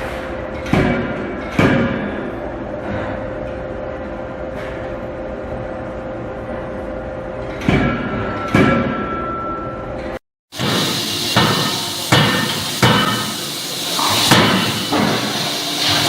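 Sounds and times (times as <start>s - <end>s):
machinery hum: 0.0s - 16.0s
forging hammer striking: 0.6s - 2.3s, 7.6s - 9.5s, 10.5s - 16.0s.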